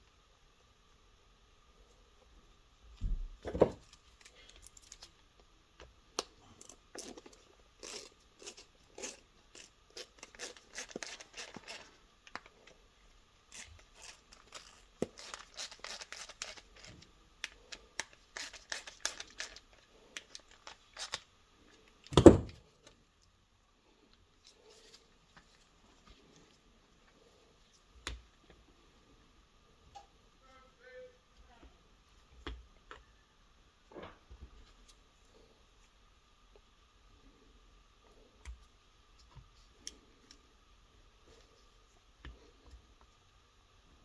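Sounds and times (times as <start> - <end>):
small tools clicking and scraping: 6.5 - 12.8.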